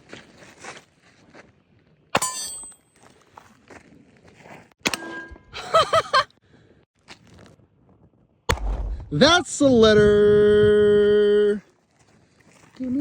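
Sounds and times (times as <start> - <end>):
metallic ring: 2.2 - 3.0, 4.9 - 5.6
sharp gunshots: 8.5 - 9.4.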